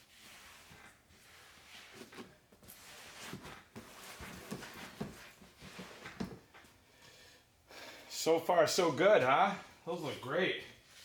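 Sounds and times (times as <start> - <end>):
faint handling knocks and rustles: 0.3 - 7.1.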